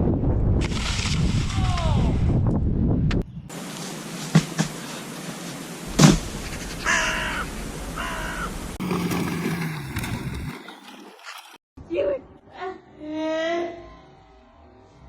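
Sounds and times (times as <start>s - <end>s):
harsh cawing calls: 6.8s - 8.6s.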